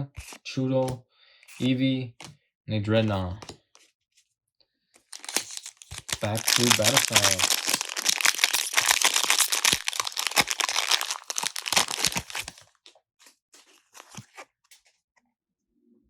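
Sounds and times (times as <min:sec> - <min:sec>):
cards tapping and rustling: 0:05.1 - 0:12.7
foil wrapper tearing and crinkling: 0:05.1 - 0:12.8.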